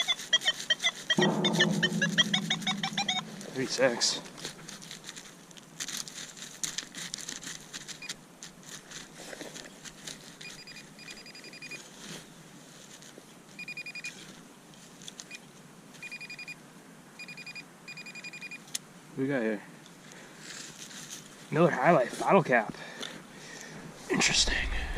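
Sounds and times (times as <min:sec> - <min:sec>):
metal detector beeping: 0:00.0 - 0:01.3, 0:10.4 - 0:11.8, 0:13.6 - 0:14.1, 0:16.0 - 0:16.6, 0:17.2 - 0:18.6.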